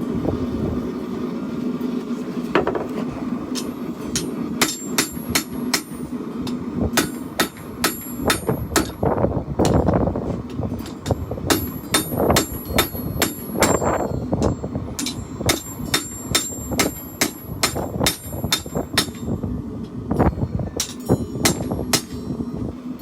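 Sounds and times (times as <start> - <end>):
steady low hum: 0.0 - 23.0
hammer striking steel on anvil: 3.5 - 9.9, 10.5 - 19.4, 20.8 - 22.4.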